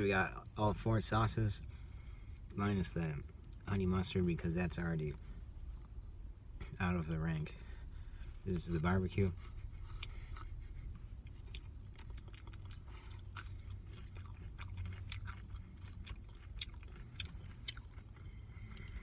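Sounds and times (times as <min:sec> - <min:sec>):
steady low hum: 0:00.0 - 0:19.0
person chewing: 0:09.6 - 0:19.0.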